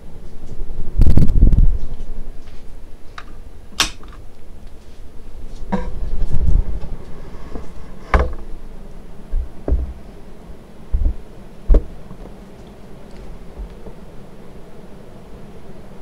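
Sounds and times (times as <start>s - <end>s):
ceiling fan running with low rumble: 0.0s - 16.0s
sharp knocks: 8.1s - 8.5s, 9.3s - 10.0s.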